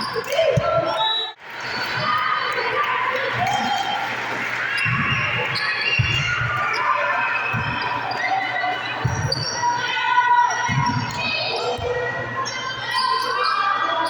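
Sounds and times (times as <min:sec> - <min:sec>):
volleyballs thumping in a gym: 0:04.8 - 0:09.8, 0:10.5 - 0:12.2.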